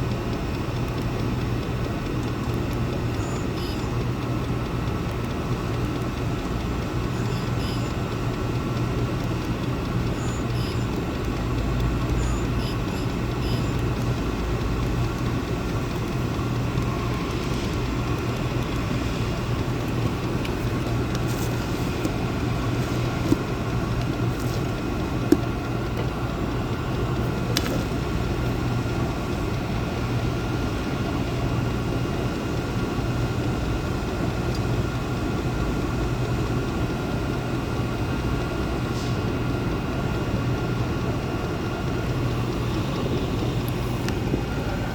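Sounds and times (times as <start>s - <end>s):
faint clicks: 0.0s - 30.1s
diesel air heater humming: 0.0s - 44.9s.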